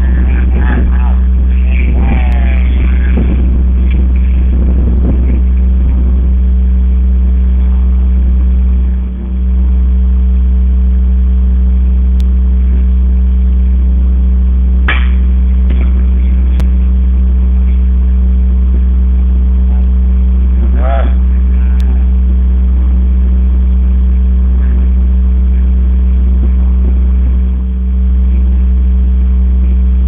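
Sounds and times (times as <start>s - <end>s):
low machine hum: 0.0s - 30.0s
sharp crack: 14.8s - 16.8s.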